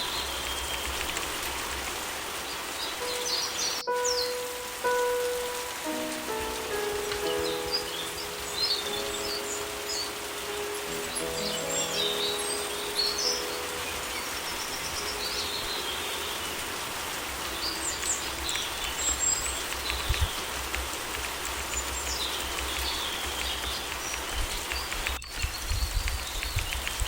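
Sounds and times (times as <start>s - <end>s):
drop-like ticks: 0.0s - 2.1s, 17.4s - 27.0s
steady rain: 0.0s - 27.0s
songbirds chirping and whistling: 2.4s - 27.0s
piano note: 3.0s - 19.2s.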